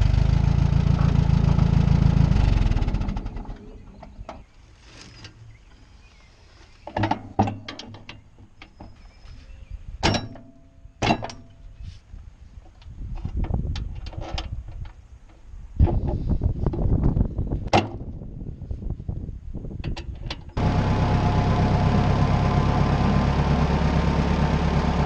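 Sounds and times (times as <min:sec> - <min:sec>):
low rumble: 0:00.0 - 0:04.2, 0:20.6 - 0:25.0.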